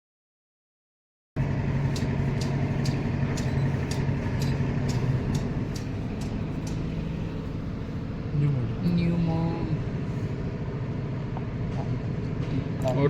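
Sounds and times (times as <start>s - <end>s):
sharp engine ticks: 1.4s - 7.3s
car engine idling: 1.4s - 13.0s.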